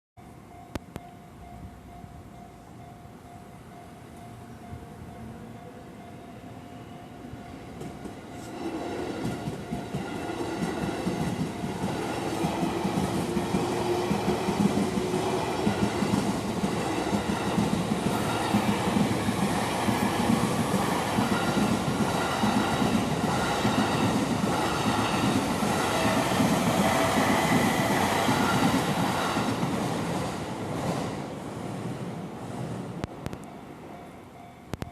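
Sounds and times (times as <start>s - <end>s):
level crossing warning bell: 0.2s - 8.8s, 33.4s - 34.9s
train wheels clattering over rails: 7.8s - 31.2s.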